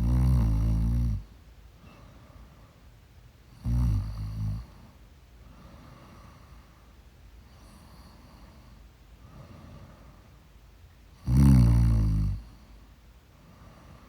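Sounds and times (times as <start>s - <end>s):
person snoring loudly: 0.0s - 1.2s, 3.6s - 4.6s, 11.2s - 12.4s.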